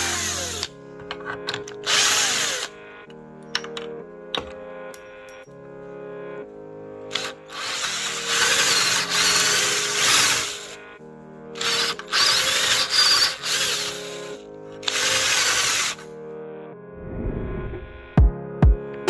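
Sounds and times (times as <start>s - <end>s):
power drill motor whine: 0.0s - 0.7s, 1.8s - 2.8s, 7.1s - 10.8s, 11.6s - 16.1s
background music: 0.0s - 19.0s.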